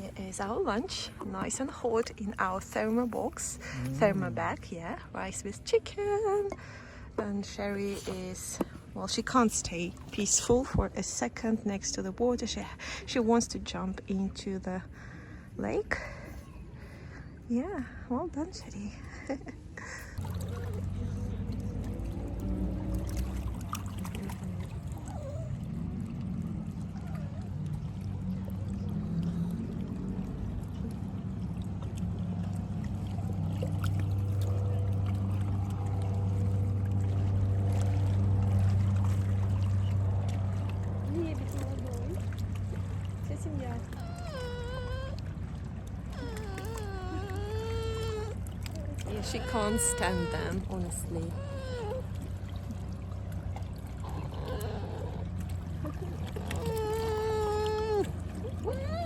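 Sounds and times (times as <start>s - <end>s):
boat engine humming: 0.0s - 59.0s
dog whining: 25.0s - 25.7s, 43.8s - 45.3s, 46.1s - 50.6s, 51.2s - 52.2s, 54.1s - 55.3s, 56.4s - 59.0s.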